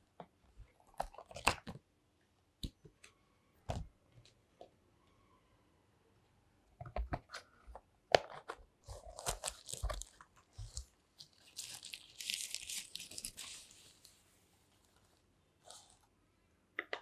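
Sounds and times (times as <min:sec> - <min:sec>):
packaging crinkling: 0:08.9 - 0:14.2.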